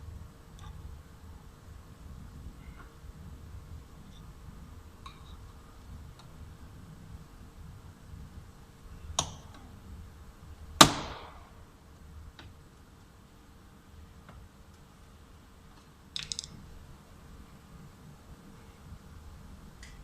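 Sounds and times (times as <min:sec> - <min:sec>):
loud plastic snap: 0:10.8 - 0:11.4.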